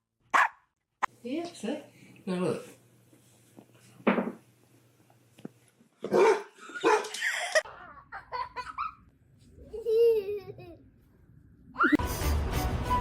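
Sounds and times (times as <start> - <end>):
dog barking and yipping: 0.3 - 0.6, 6.0 - 7.2.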